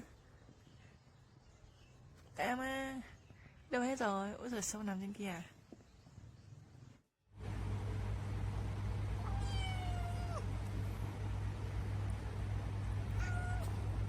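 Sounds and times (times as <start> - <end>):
steady low hum: 7.4 - 14.0
cat meowing: 9.2 - 10.5, 13.1 - 13.8.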